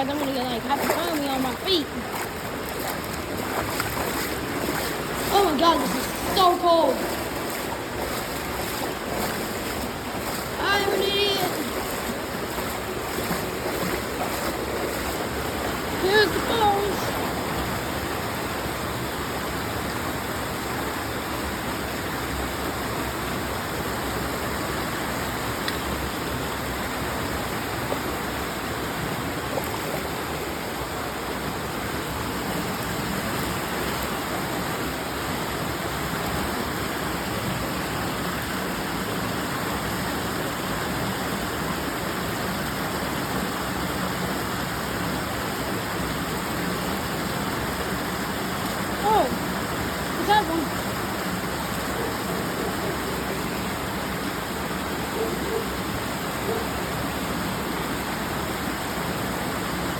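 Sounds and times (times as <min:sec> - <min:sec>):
waterfall roar: 0:00.0 - 0:20.3.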